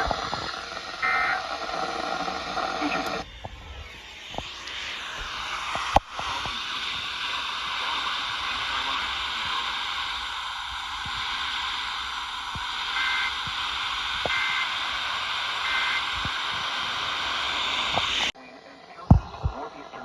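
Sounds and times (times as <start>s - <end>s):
radio static hiss: 0.0s - 20.0s
two-tone data bleeps: 12.9s - 13.5s, 15.6s - 16.3s.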